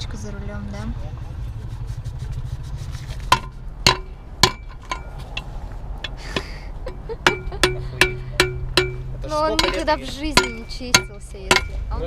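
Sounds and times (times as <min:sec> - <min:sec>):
low steady hum: 0:00.0 - 0:12.0
metal knocks on muffler: 0:03.3 - 0:05.4, 0:06.0 - 0:11.9.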